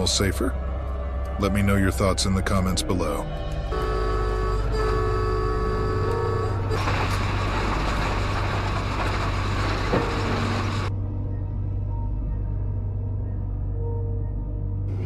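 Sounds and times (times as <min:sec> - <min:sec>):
train horn chord: 0:03.7 - 0:07.0
train running rushing noise: 0:06.7 - 0:10.9.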